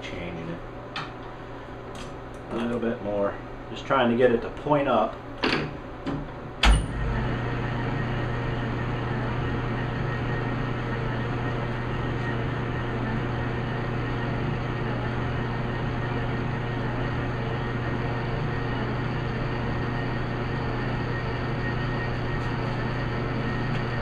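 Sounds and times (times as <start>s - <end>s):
lathe motor hum: 7.0s - 24.0s.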